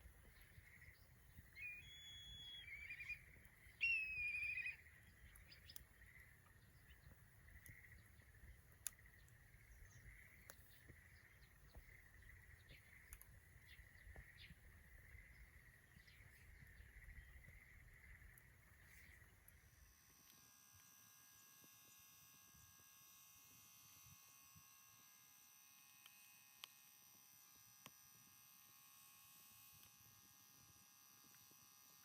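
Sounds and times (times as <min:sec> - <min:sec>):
songbird whistling and trilling: 0:01.5 - 0:05.8.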